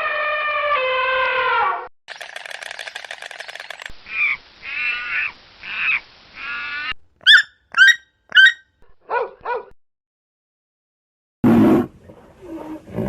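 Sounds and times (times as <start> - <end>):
sharp caw-like calls: 4.1 - 7.4
wavering animal calls: 4.1 - 8.6.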